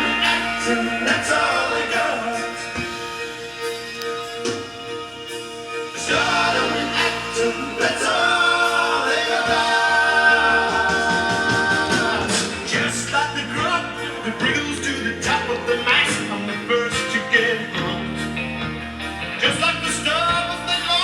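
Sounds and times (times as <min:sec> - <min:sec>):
choir singing on a record: 0:00.0 - 0:04.7, 0:05.9 - 0:18.8.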